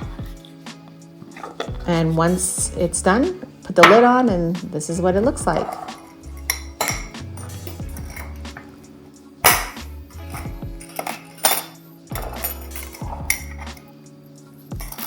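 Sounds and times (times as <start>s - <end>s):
soft background music: 0.0s - 15.0s
utensil clinking against glass jars: 1.2s - 2.1s, 5.5s - 8.7s, 9.4s - 13.9s, 14.7s - 15.0s.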